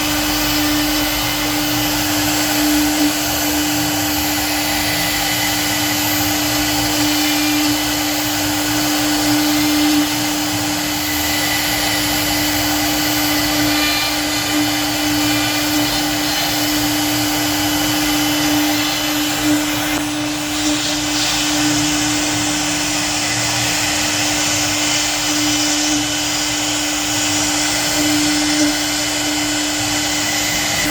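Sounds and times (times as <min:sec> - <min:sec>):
cutting hiss: 0:00.0 - 0:30.9
router spindle tone: 0:00.0 - 0:30.9.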